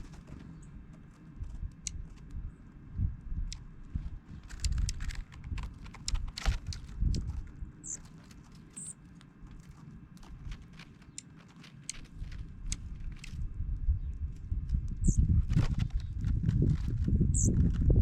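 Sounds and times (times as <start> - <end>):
sharp taps and clicks: 4.5 - 7.3.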